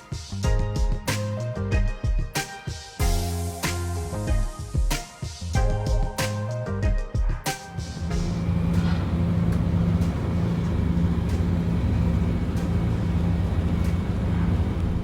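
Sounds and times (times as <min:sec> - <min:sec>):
constant rushing noise: 0:08.0 - 0:15.0
low engine hum: 0:08.0 - 0:15.0.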